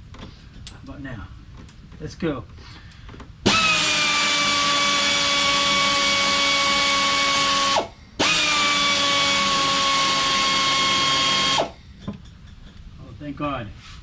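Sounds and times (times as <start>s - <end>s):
air ratchet whining: 3.5s - 11.8s.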